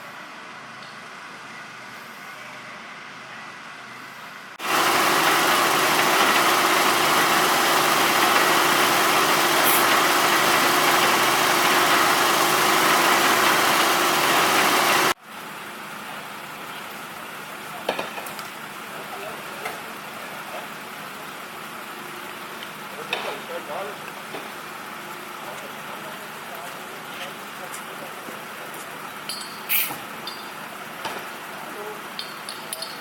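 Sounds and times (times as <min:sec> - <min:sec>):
engine running close: 0:04.6 - 0:15.2.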